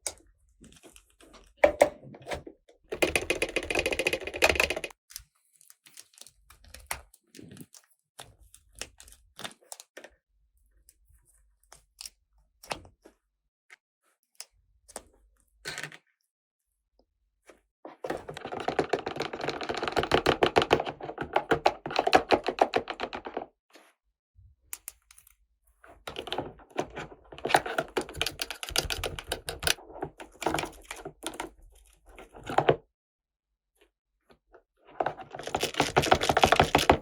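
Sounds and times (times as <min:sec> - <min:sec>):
plastic toy pieces rattling: 0:35.2 - 0:37.0.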